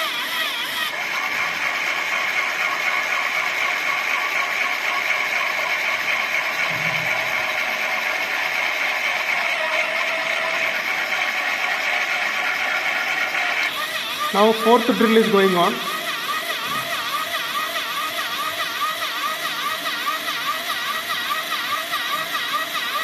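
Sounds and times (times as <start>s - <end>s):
electric motor whining: 0.0s - 23.0s.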